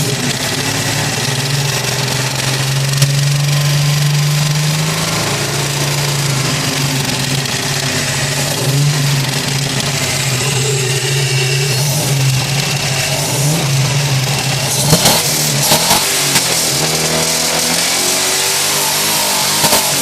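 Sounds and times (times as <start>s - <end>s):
engine running with ticking: 0.0s - 20.0s
sharp click: 19.6s - 20.0s.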